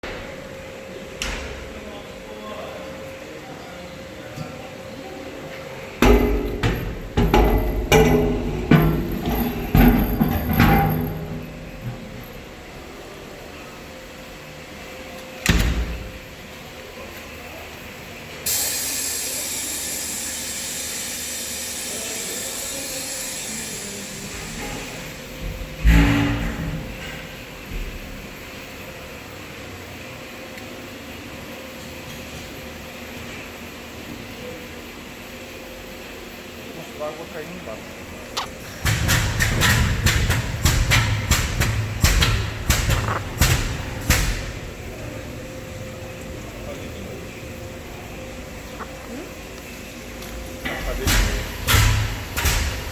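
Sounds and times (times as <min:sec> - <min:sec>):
washing machine running: 0:04.9 - 0:36.8, 0:37.8 - 0:52.9
loud knocks and clatters: 0:06.0 - 0:12.4, 0:38.7 - 0:44.6, 0:50.7 - 0:52.9.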